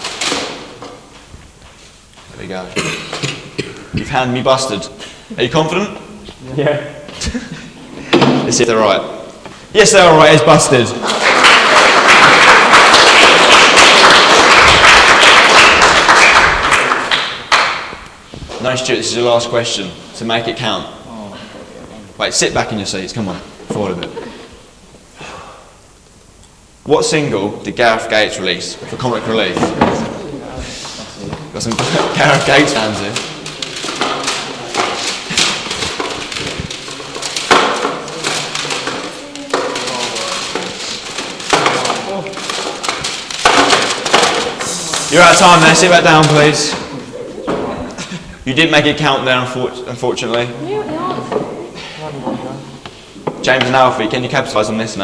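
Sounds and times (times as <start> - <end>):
album cases knocking and clattering: 0.0 - 1.3, 29.4 - 30.2, 31.6 - 46.9
audience clapping: 10.3 - 18.2, 32.0 - 46.5
faint voices: 29.7 - 42.8.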